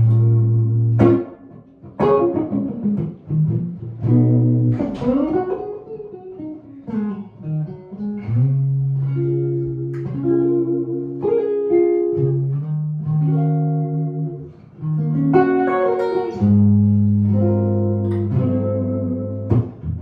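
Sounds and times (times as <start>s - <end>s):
electric guitar playing: 0.0s - 20.0s.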